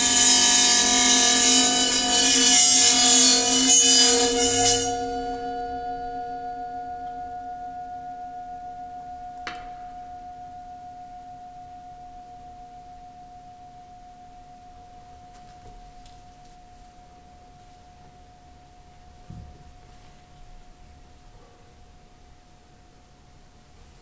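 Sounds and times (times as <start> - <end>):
bright scraping on instrument: 0.0 - 6.0.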